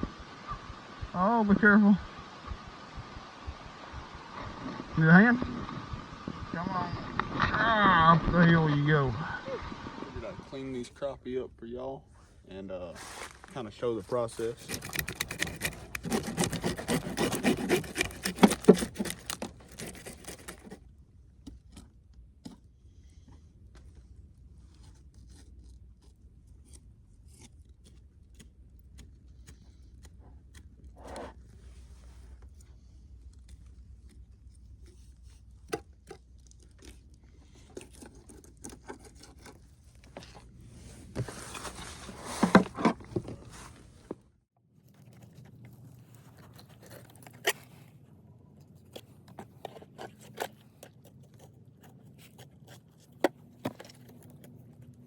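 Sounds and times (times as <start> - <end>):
knife scraping fish scales: 14.4 - 20.8.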